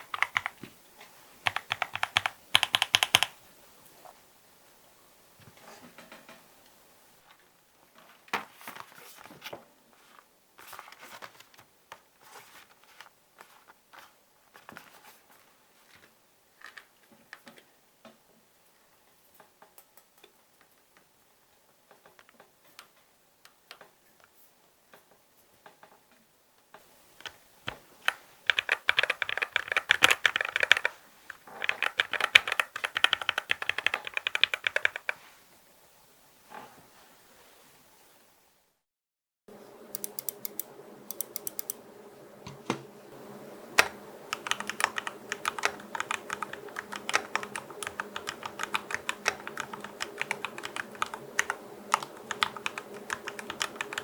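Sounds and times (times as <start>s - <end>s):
mechanical keyboard clacking: 0.0s - 0.6s, 1.4s - 3.4s, 28.1s - 30.9s, 31.6s - 35.2s, 40.0s - 41.8s, 43.8s - 54.0s.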